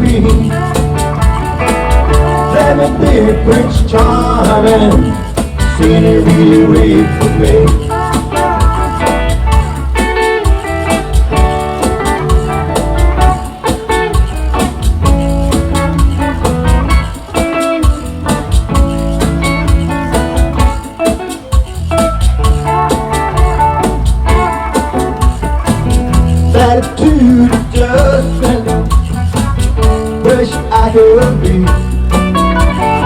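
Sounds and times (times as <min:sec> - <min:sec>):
electric guitar: 0:00.0 - 0:33.0
live band playing: 0:00.0 - 0:33.0.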